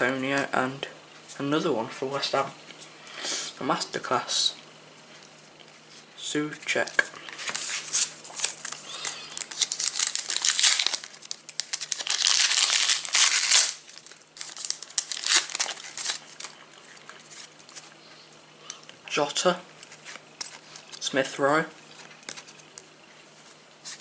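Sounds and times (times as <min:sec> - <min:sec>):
foil wrapper crinkling and tearing: 0:06.9 - 0:17.8.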